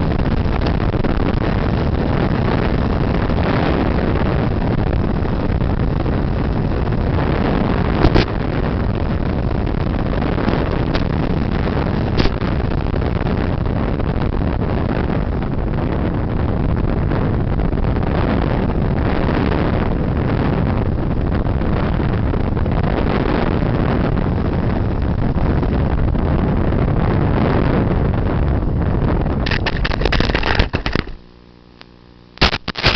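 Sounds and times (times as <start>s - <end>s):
wind rushing over microphone: 0.0s - 31.2s.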